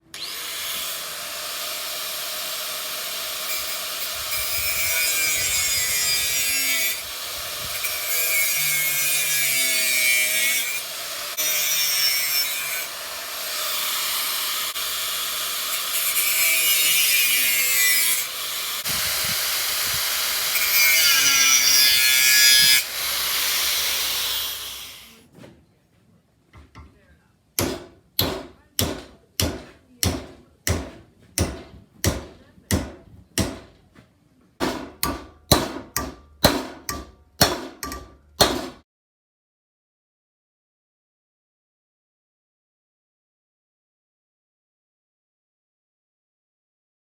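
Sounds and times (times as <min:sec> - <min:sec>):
tool grinding metal: 0:00.0 - 0:25.2, 0:34.6 - 0:38.8.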